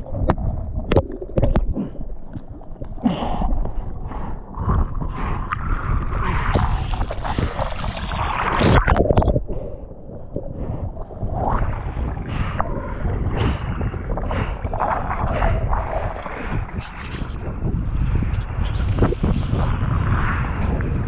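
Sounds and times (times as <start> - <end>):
wind buffeting microphone: 3.9 - 21.0
water splashing and spraying: 6.2 - 9.1.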